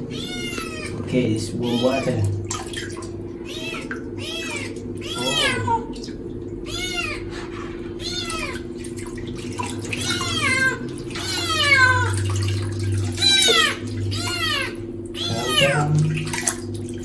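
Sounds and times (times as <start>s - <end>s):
kitten meowing: 0.0s - 2.2s, 3.5s - 5.9s, 6.6s - 7.3s, 8.0s - 8.6s, 10.0s - 12.3s, 13.0s - 16.0s
steady low hum: 0.0s - 17.0s.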